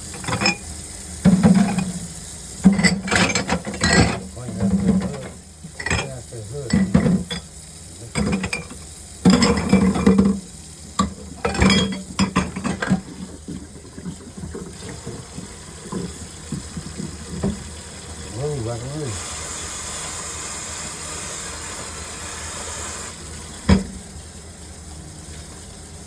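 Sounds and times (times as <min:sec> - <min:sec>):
dishes clinking and scraping: 0:00.1 - 0:00.7, 0:01.3 - 0:02.0, 0:02.6 - 0:07.5, 0:08.1 - 0:10.4, 0:11.0 - 0:13.2.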